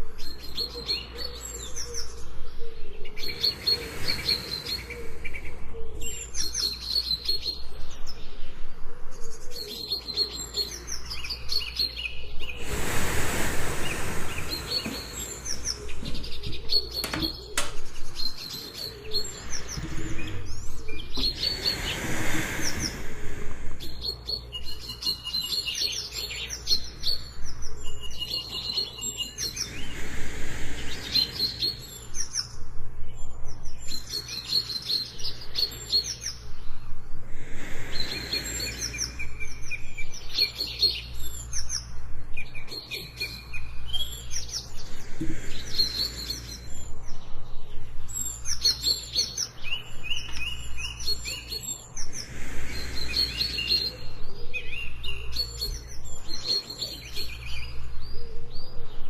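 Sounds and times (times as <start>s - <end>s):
jungle birds chirping: 0.0s - 59.0s
soft breathing hiss: 0.0s - 59.0s
steady low rumble: 12.4s - 16.9s, 19.0s - 24.8s.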